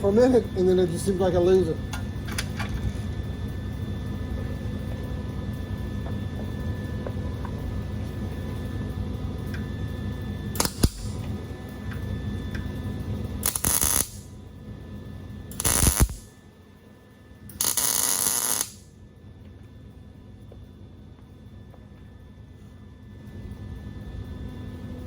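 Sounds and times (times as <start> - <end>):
low shop hum: 0.0 - 25.0
crackling welding arc hiss: 10.6 - 11.4, 13.4 - 14.3, 15.5 - 16.4, 17.5 - 18.9.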